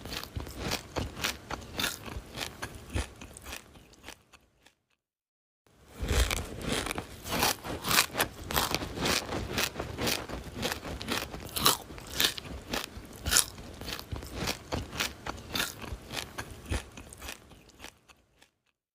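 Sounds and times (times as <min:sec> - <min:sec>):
person chewing crunchy food: 0:00.0 - 0:05.0, 0:05.8 - 0:18.8.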